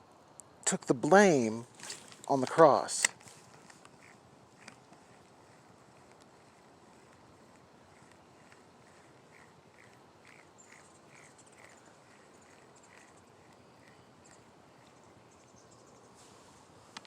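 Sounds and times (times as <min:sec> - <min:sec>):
soft chirps: 0:05.1 - 0:16.4.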